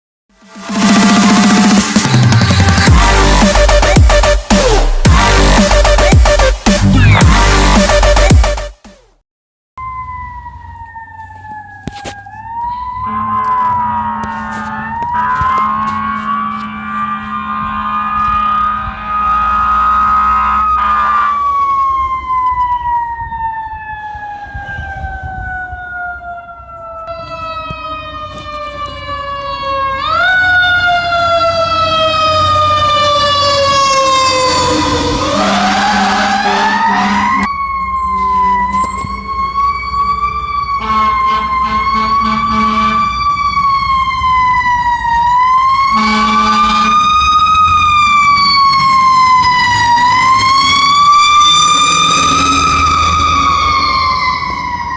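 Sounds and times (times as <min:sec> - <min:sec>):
fire engine sirens: 0:00.4 - 0:08.6, 0:09.8 - 0:54.9
low horn blasts: 0:02.6 - 0:04.2, 0:10.2 - 0:21.5, 0:33.7 - 0:37.5, 0:40.8 - 0:43.2, 0:45.8 - 0:47.2.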